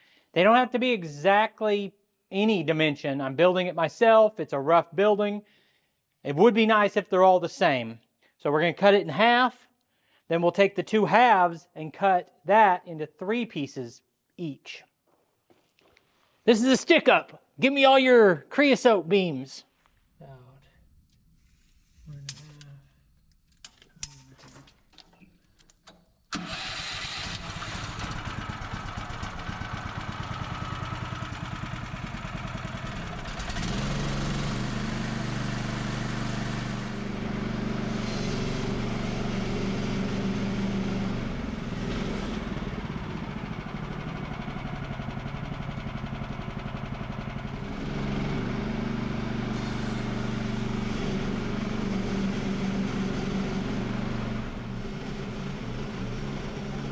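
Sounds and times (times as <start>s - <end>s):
gasoline engine starting and running: 24.7s - 56.9s.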